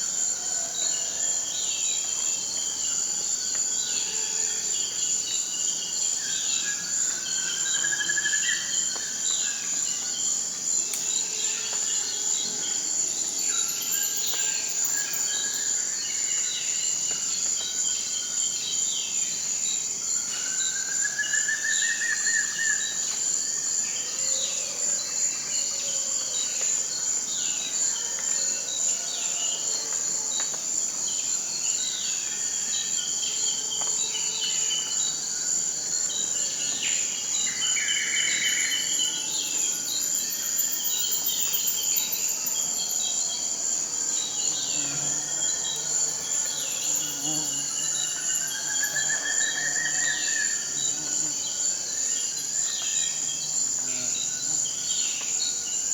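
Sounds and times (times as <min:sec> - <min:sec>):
high-pitched insect drone: 0:12.3 - 0:16.3, 0:36.1 - 0:54.6.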